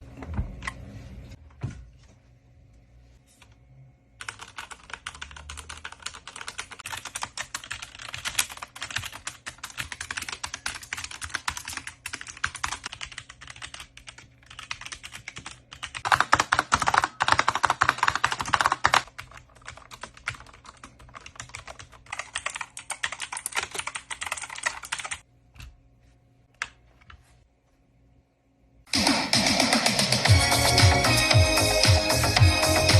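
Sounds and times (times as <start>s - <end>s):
fast typing on computer keyboards: 4.2s - 25.2s.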